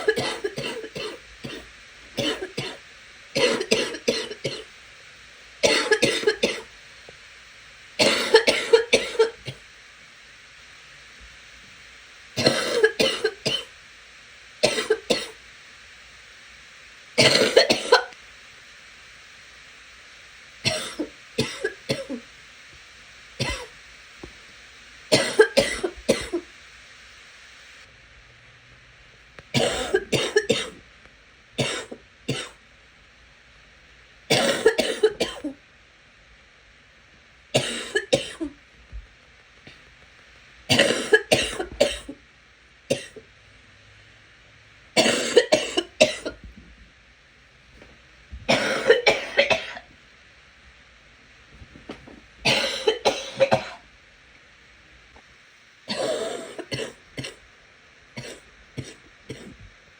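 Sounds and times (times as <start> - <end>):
person wet coughing: 0.0 - 1.6, 3.4 - 4.6, 5.6 - 6.6, 8.0 - 9.4, 12.4 - 13.7, 17.2 - 18.1, 25.1 - 26.5, 29.6 - 30.8, 34.3 - 35.6, 40.7 - 42.2, 45.0 - 46.4, 48.5 - 49.8, 52.5 - 53.8, 55.9 - 57.4, 58.2 - 59.6.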